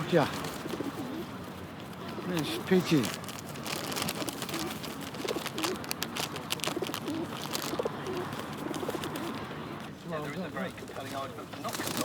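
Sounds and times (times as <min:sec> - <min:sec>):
pigeons cooing: 0:00.0 - 0:02.9, 0:03.5 - 0:09.9.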